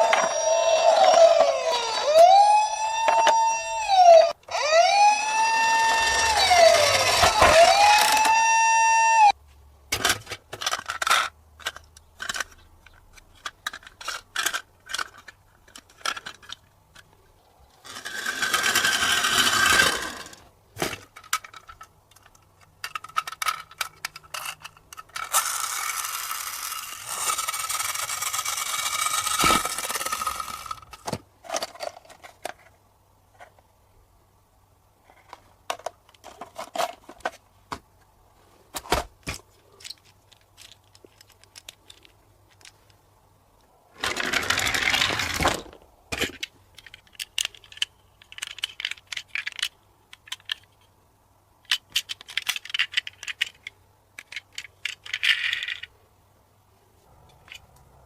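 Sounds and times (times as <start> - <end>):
toy police siren wailing: 0.0 - 9.3.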